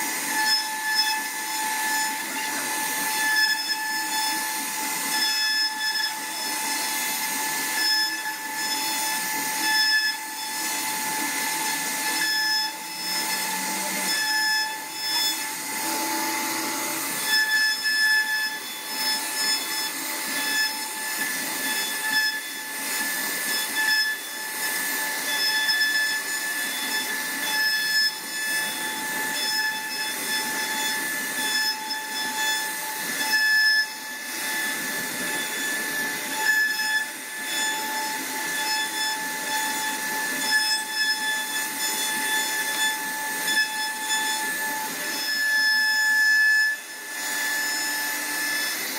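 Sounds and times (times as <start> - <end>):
bit cutting wood: 0.0 - 48.9
router spindle whining: 0.0 - 48.9.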